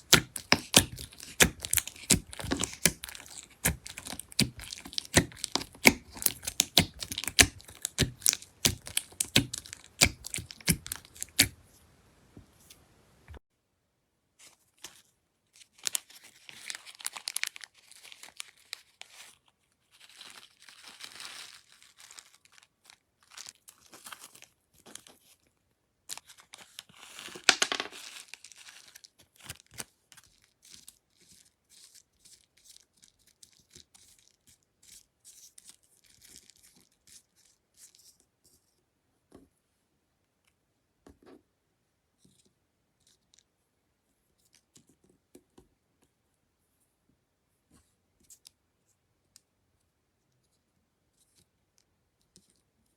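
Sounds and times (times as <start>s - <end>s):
slime crackling and popping: 0.0s - 11.6s.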